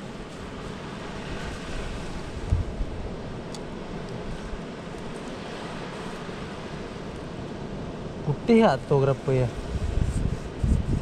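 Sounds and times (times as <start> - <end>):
wind on microphone: 0.0 - 4.8, 9.1 - 11.0
waves rushing: 0.0 - 11.0.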